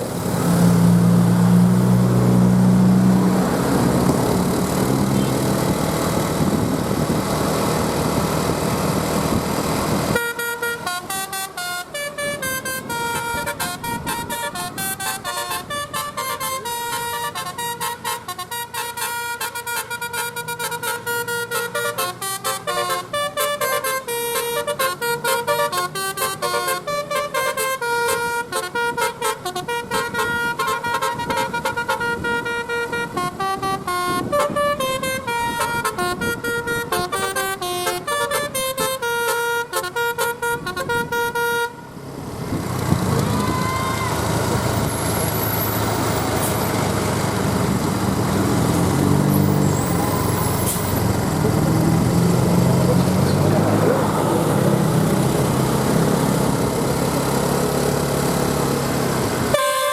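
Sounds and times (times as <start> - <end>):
musical bus horn melody: 0.6 - 7.2, 10.1 - 42.0, 49.3 - 51.6, 59.4 - 59.9
noisy outdoor din: 41.9 - 59.6.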